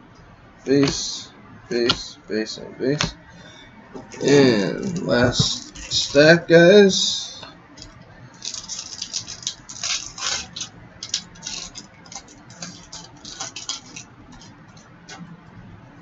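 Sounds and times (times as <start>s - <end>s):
foil wrapper crinkling and tearing: 8.4s - 14.8s.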